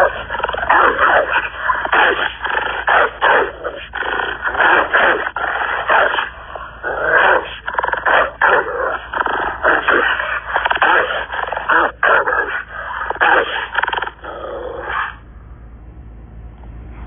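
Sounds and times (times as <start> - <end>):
wolf growling: 0.0 - 15.2.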